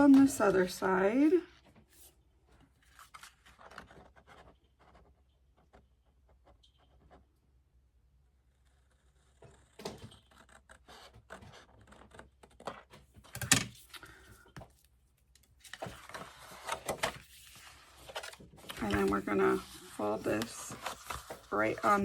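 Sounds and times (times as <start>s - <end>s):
paper rustling and scraping: 0.0s - 5.8s, 15.5s - 22.0s.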